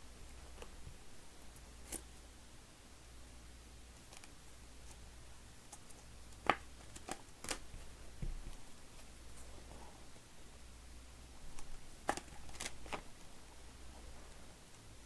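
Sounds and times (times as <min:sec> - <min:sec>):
faint room hum: 0:00.0 - 0:15.0
cards clicking and rustling: 0:05.7 - 0:07.7, 0:11.6 - 0:13.1.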